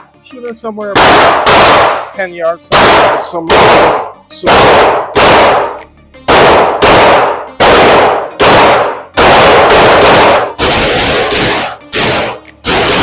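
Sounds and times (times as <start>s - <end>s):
pistol shots echoing: 0.9s - 13.0s.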